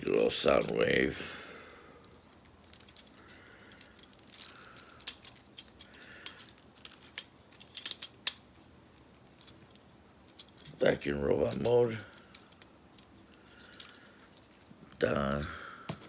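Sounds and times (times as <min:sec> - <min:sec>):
plastic toy parts clicking and snapping: 0:02.4 - 0:10.8.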